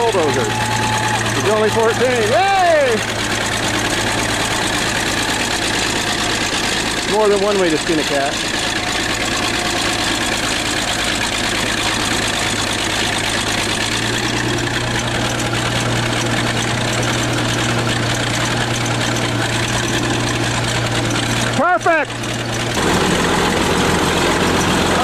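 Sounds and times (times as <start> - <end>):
bulldozer diesel engine running: 0.0 - 25.0.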